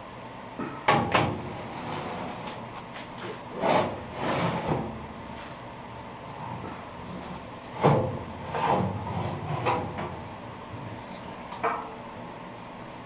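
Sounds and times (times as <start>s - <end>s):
scraping and shuffling of tools: 0.6s - 5.7s.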